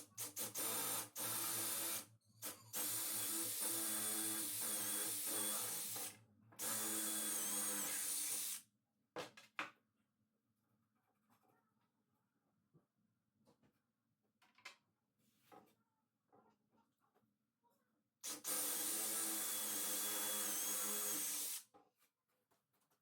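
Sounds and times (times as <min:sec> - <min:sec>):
power drill motor whine: 0:00.5 - 0:08.6, 0:18.3 - 0:21.6.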